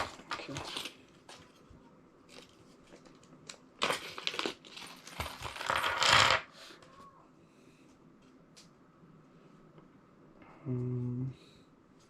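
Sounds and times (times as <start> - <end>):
rustling and scraping: 0.0 - 7.0.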